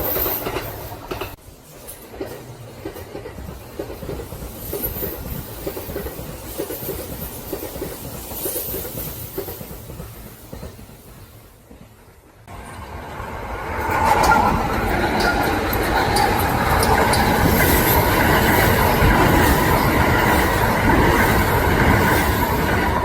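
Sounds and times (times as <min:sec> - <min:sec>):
electric train passing: 0:00.0 - 0:23.0
wheels clacking over rail joints: 0:00.0 - 0:23.0.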